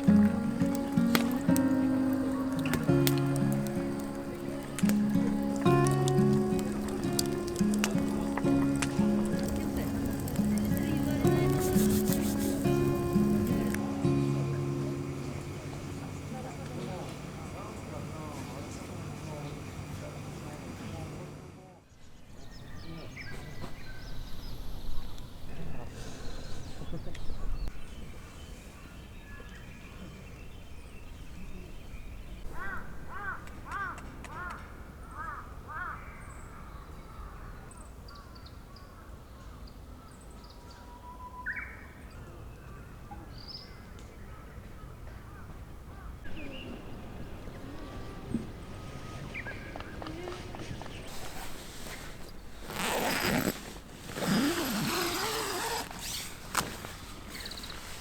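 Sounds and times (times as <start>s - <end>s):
distant bird calls: 21.9s - 53.5s
zipper pulled rasping: 52.6s - 56.8s.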